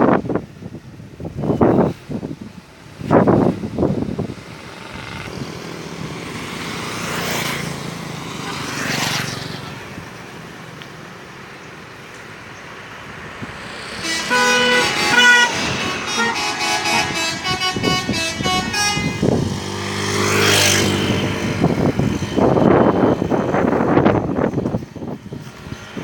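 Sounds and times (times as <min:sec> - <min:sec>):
rush of engine noise: 0:00.0 - 0:26.0
multi-tone musical bus horn: 0:13.6 - 0:21.8.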